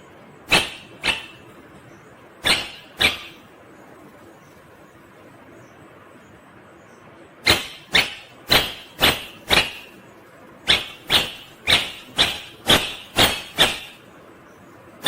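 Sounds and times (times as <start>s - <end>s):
parrot giving harsh calls: 0.5s - 1.6s, 2.4s - 3.5s, 7.4s - 10.0s, 10.7s - 14.1s.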